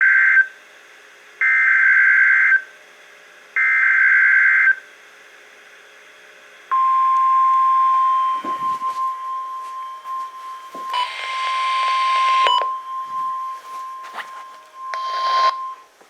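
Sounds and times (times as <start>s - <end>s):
steady alert tone: 8.3s - 15.8s
digital data screeches: 10.6s - 15.8s.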